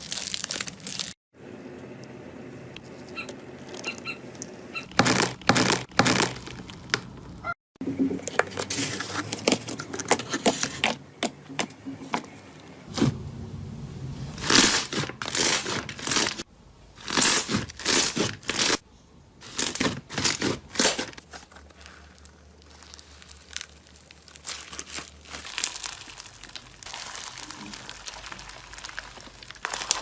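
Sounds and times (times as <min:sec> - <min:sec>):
slime crackling by hand: 0:19.6 - 0:30.0.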